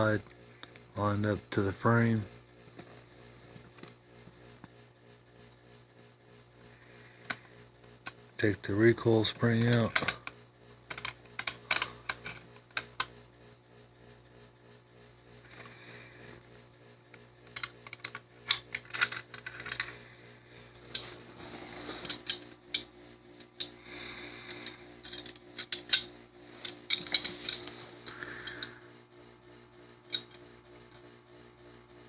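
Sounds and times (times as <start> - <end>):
metal parts scraping: 18.0 - 20.0, 20.7 - 22.8, 24.4 - 28.7
metallic clicks and clinks: 24.5 - 28.7.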